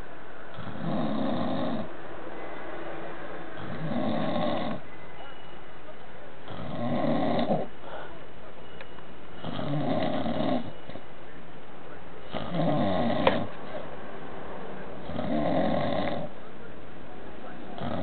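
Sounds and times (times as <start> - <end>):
person snoring: 15.1 - 16.3.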